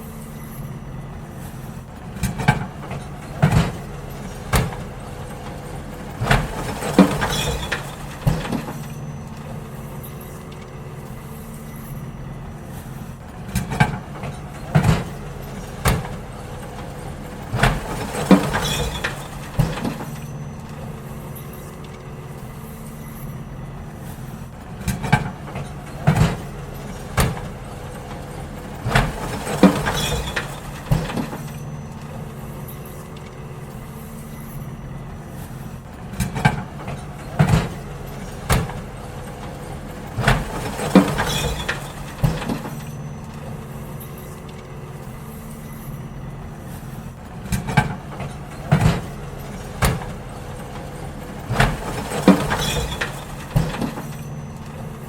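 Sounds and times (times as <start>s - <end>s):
garbage truck engine humming: 0.0s - 55.0s
bins banging and clattering: 1.0s - 55.0s.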